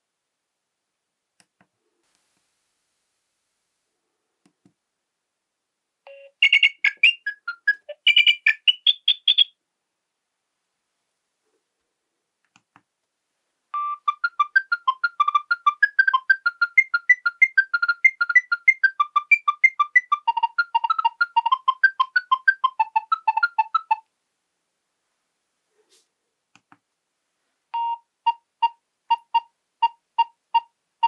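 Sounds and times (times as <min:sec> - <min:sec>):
synthesized ringtone melody: 0:06.1 - 0:09.5, 0:13.8 - 0:24.0, 0:27.8 - 0:30.7.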